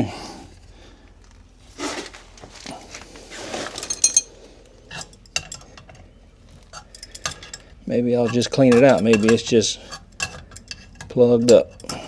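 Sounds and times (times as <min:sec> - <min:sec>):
rustling and scraping of tools: 0:00.0 - 0:12.0
metallic clinks: 0:03.8 - 0:12.0.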